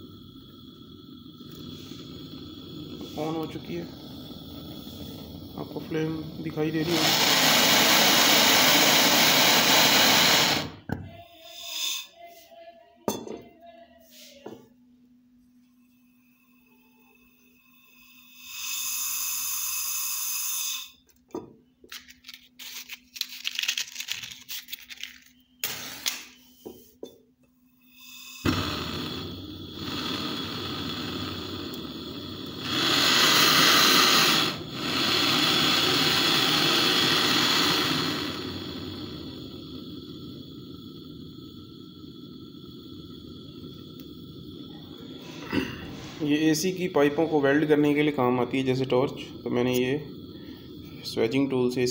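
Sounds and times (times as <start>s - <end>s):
gas torch flame hissing: 0.0s - 12.2s, 15.9s - 21.0s, 27.8s - 51.9s.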